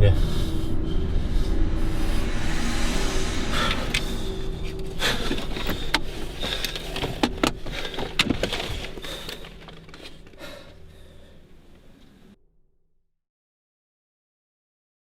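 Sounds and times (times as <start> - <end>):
sharp clicks and rattles: 5.0 - 12.1.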